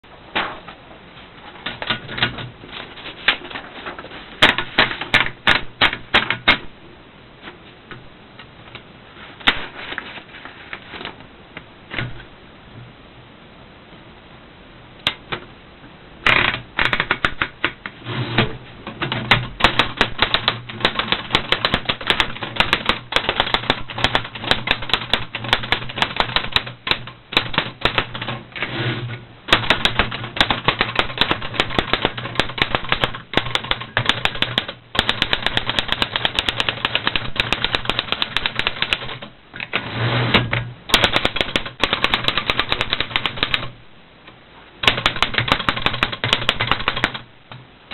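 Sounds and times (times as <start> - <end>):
typewriter key strikes: 29.5 - 39.2, 40.9 - 43.7, 44.8 - 47.2.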